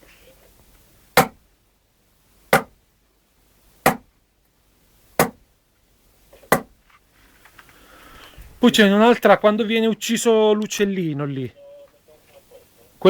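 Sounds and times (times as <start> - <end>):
sharp hand strikes: 2.5 - 2.8, 3.9 - 4.1, 5.2 - 5.4.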